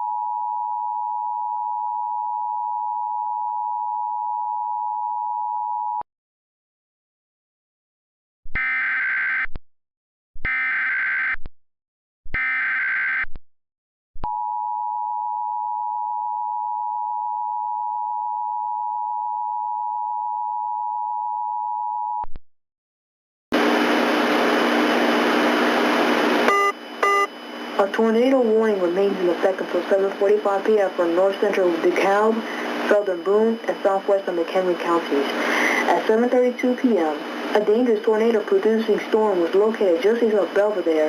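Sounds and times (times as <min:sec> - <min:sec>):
short beeps: 0:26.5 - 0:27.3
two-tone attention signal: 0:26.5 - 0:27.3.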